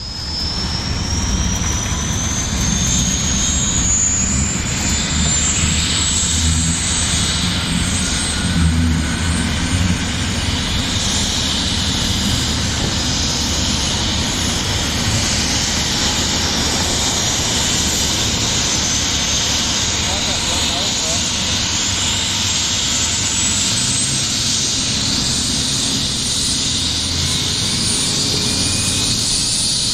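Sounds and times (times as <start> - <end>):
helicopter rotor rumble: 0.0 - 29.9
high turbine whine: 0.0 - 29.9.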